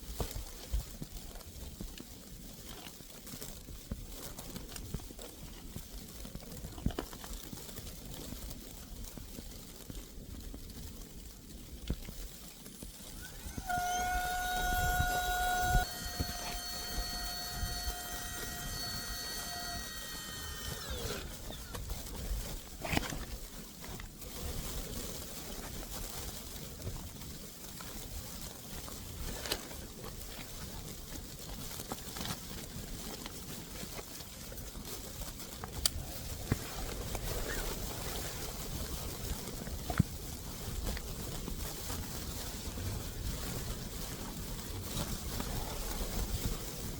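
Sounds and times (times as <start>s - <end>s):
chord of steady tones: 13.3s - 21.7s
wind rushing over microphone: 35.4s - 46.9s.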